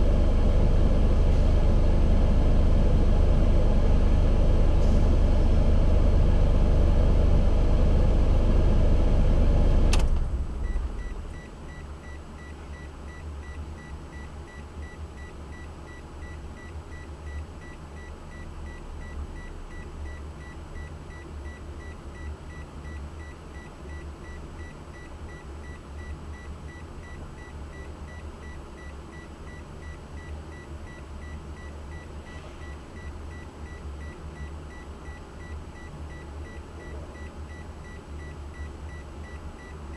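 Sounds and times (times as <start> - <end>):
car engine running: 0.0 - 11.8
engine shut off click: 4.7 - 5.2, 9.8 - 11.4.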